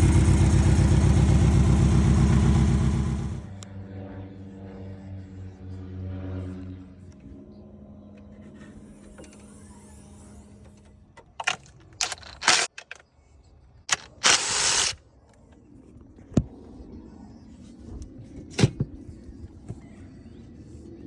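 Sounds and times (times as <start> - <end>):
loud rasping burst: 0.0 - 3.5, 13.9 - 15.0
sharp mechanical clacks: 11.4 - 13.0, 13.9 - 15.0.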